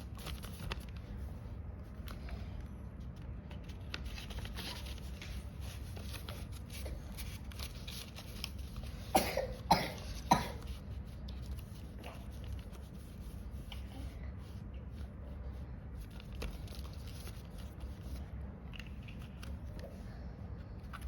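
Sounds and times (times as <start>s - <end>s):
person coughing: 9.1s - 10.7s.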